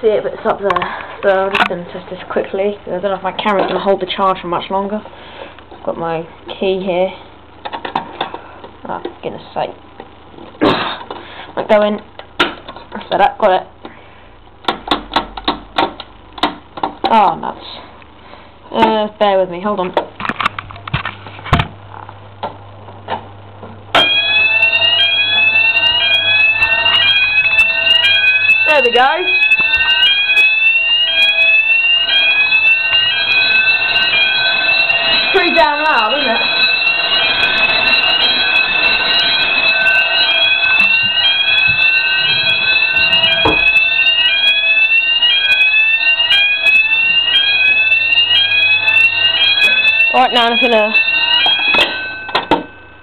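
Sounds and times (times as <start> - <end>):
fire alarm rising sweep tone: 24.0 - 53.0.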